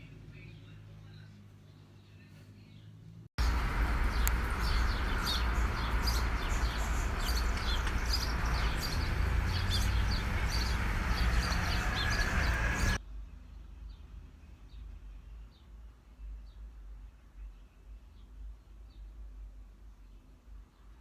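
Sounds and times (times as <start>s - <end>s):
low outdoor rumble: 2.9s - 13.9s
high bird chirps: 3.4s - 13.0s.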